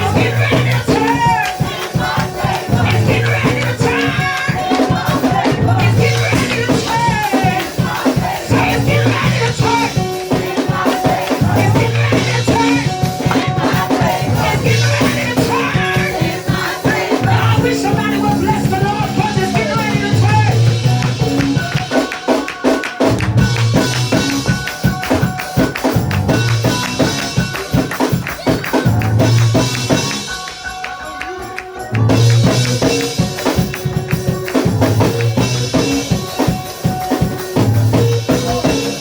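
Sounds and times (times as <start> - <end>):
voices singing and shouting: 0.0 - 23.1
live church praise music: 0.0 - 39.0.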